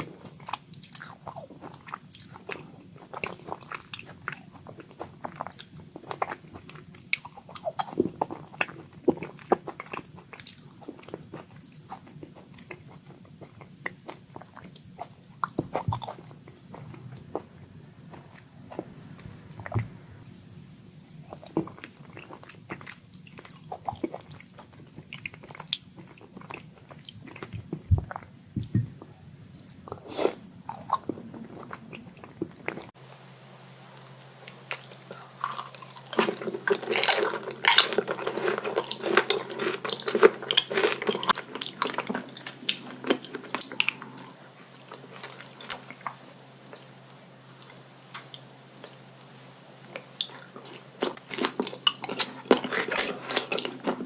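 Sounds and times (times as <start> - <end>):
background hum: 0.0 - 54.0
wet chewing and biting: 34.7 - 46.2.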